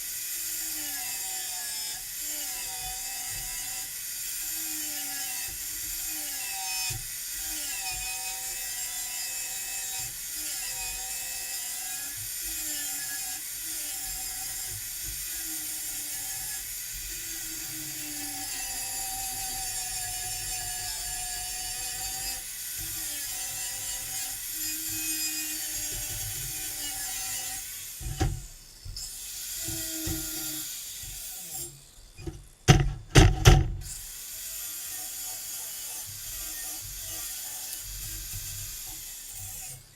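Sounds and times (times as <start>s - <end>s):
power tool running on metal: 0.0s - 39.9s
loud sharp knocks: 32.7s - 33.8s.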